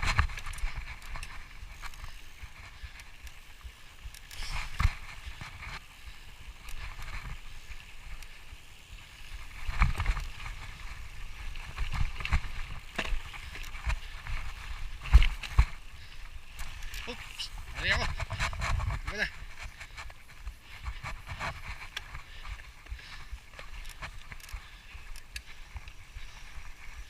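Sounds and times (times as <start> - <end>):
bicycle knocks and rattles: 0.0 - 3.4, 9.3 - 25.9
bicycle riding on dirt trail: 0.0 - 27.0.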